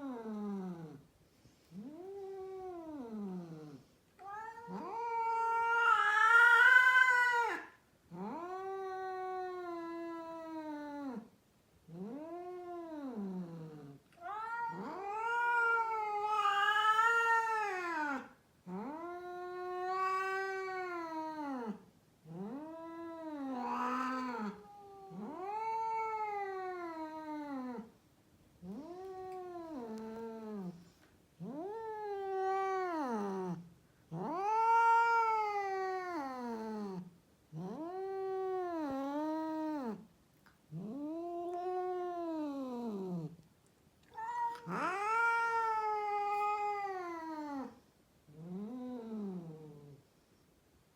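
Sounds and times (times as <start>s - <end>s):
cat yowling: 4.2s - 10.4s, 14.2s - 18.3s, 18.9s - 21.8s, 22.4s - 27.9s, 34.2s - 36.7s, 44.1s - 47.8s.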